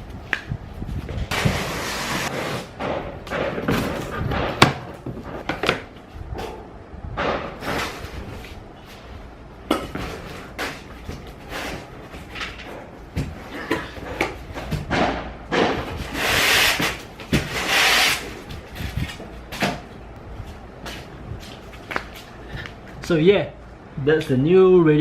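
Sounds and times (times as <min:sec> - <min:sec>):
handling knocks and clatters: 0:09.6 - 0:16.1.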